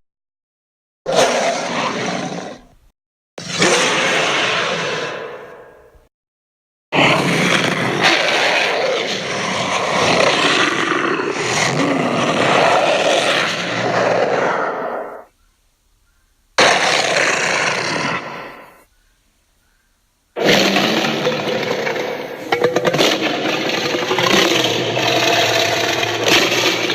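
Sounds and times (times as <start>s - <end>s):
dinosaur roar: 1.1s - 2.8s, 3.4s - 6.0s, 7.0s - 15.3s, 16.6s - 18.9s, 20.4s - 26.9s.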